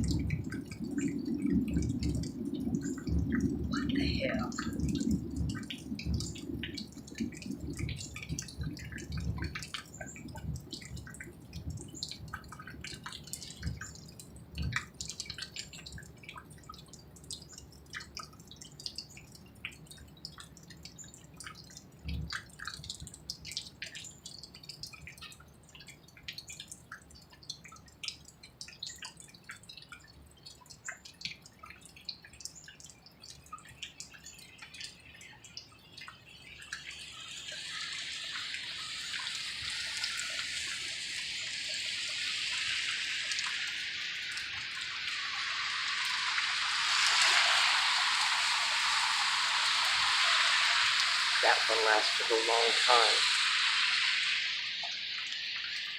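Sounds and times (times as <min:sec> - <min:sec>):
steady hiss: 0:00.0 - 0:16.7, 0:36.1 - 0:55.9
irregular ticks: 0:00.0 - 0:46.3.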